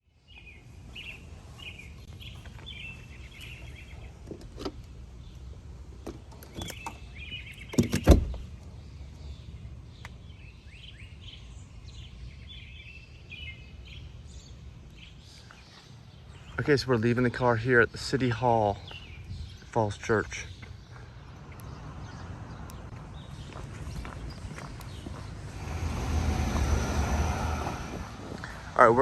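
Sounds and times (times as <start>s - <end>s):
small birds chirping: 0.0s - 29.0s
low outdoor rumble: 21.0s - 29.0s.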